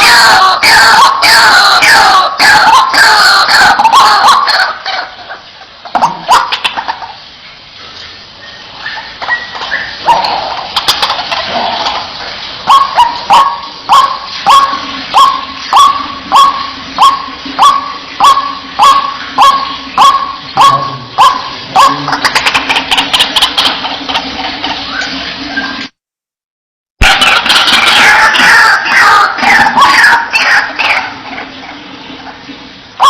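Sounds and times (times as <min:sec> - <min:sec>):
waterhen calling: 0:00.0 - 0:25.9, 0:27.0 - 0:33.0.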